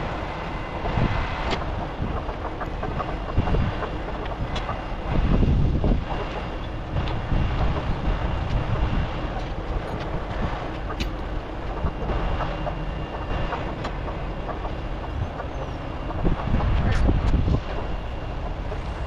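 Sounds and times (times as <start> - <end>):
low steady rumble: 0.0 - 19.0
wind buffeting microphone: 0.0 - 19.0
scattered clicks and knocks: 0.8 - 19.0.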